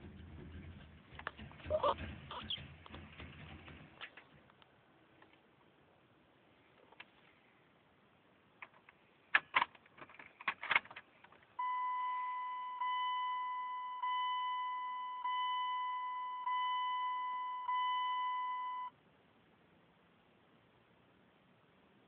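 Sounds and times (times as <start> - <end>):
sharp clicks and knocks: 0.0 - 5.4, 8.6 - 11.5
truck warning chime dinging: 11.6 - 18.9.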